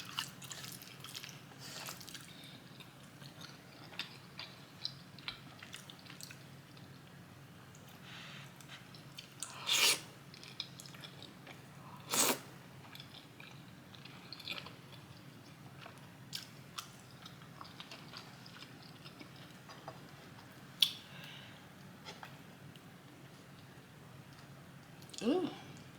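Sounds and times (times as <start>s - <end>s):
chewing food: 0.0s - 7.1s, 10.3s - 11.7s, 12.8s - 21.0s.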